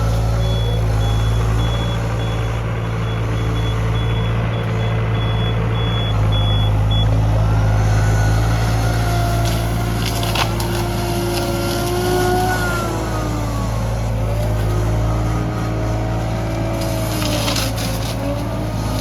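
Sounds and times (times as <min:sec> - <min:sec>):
low engine hum: 0:00.0 - 0:19.0
short cracks: 0:08.3 - 0:19.0.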